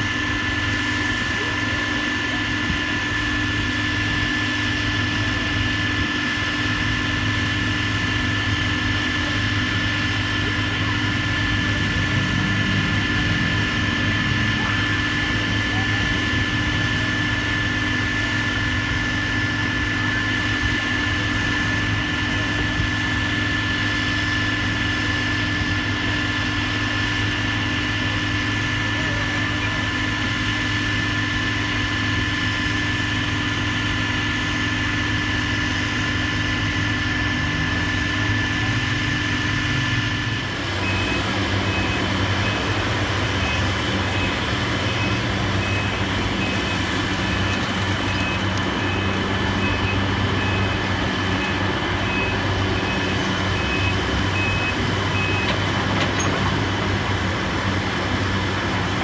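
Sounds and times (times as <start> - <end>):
demolition machinery engine drone: 0.0 - 59.0
reversing alarm beeping: 40.7 - 56.4.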